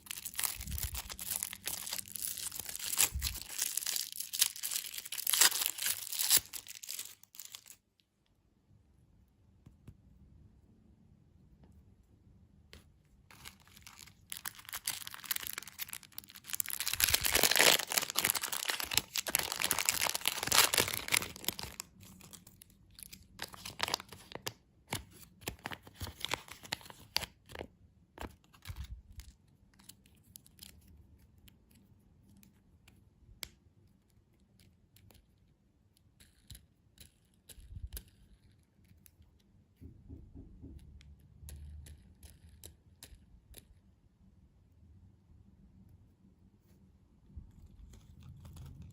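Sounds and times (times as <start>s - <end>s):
candy wrapper tearing and crinkling: 0.0s - 7.8s, 13.3s - 31.8s.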